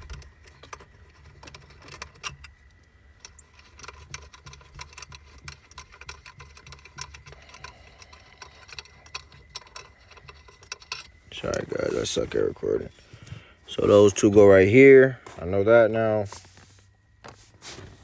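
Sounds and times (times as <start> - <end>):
screws clicking and ticking: 0.0 - 11.9.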